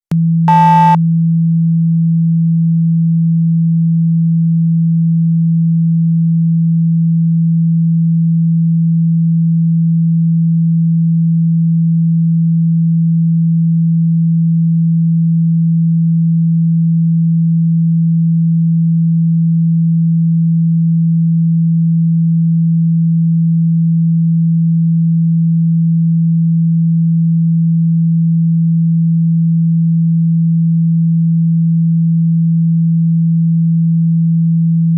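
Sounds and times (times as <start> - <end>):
brief high beep: 0.5 - 1.0
steady low pure tone: 0.5 - 1.0.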